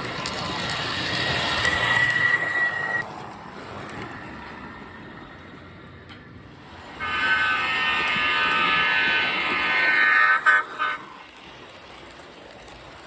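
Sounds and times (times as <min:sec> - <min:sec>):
model locomotive running rumble: 0:00.0 - 0:13.0
locomotive horn chord: 0:07.0 - 0:11.0.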